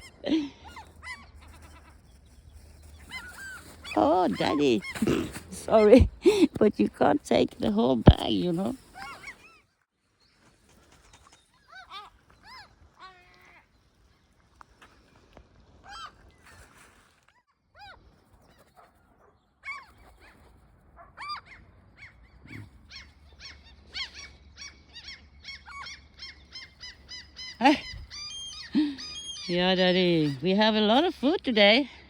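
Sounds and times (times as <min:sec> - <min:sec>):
birds calling: 0:00.0 - 0:09.7, 0:21.2 - 0:32.0.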